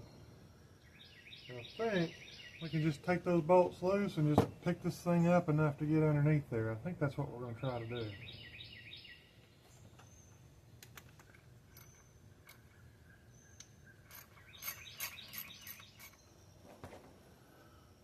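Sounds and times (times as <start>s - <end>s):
faint bird chirps: 0.0s - 3.2s, 11.7s - 18.0s
hand tools clicking and clinking: 13.6s - 16.3s.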